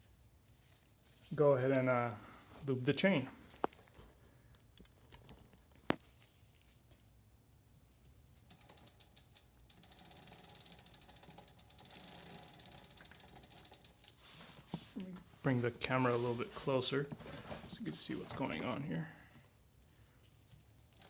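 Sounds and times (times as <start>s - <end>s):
crickets chirping: 0.0s - 21.0s
bicycle hub ratchet clicking: 8.4s - 14.6s.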